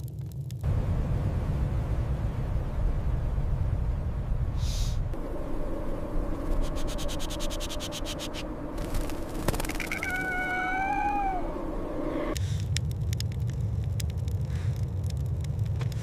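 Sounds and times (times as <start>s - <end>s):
quick crackles: 6.4s - 10.6s
fox whining cry: 9.8s - 12.2s.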